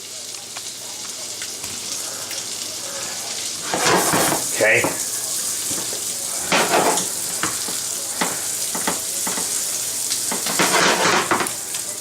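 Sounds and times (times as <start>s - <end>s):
food sizzling in a pan: 0.0s - 12.0s
scrapes and knocks in pan: 3.6s - 5.0s, 5.7s - 9.6s, 10.3s - 11.7s.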